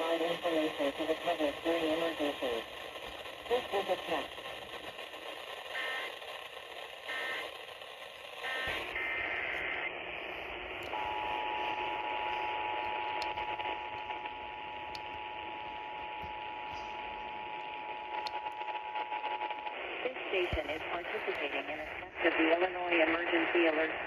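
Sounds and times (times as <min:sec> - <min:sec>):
radio hiss: 0:00.0 - 0:24.0
screechy data bursts: 0:05.7 - 0:06.3, 0:07.0 - 0:07.7, 0:08.4 - 0:09.3.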